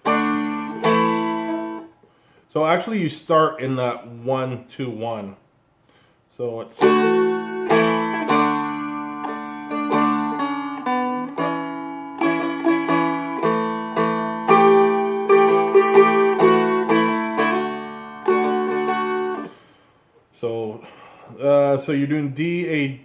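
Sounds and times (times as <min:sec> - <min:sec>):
dulcimer strummed: 0:00.0 - 0:01.9, 0:06.8 - 0:19.6.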